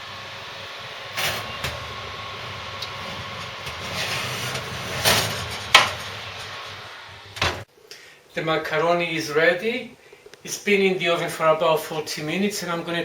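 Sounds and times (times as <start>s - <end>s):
oven fan humming: 0.0s - 7.7s.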